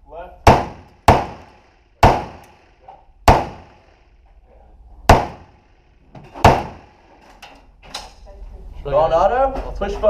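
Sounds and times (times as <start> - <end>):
gunshots with echo: 0.5 - 4.0, 5.1 - 5.7, 6.4 - 7.0.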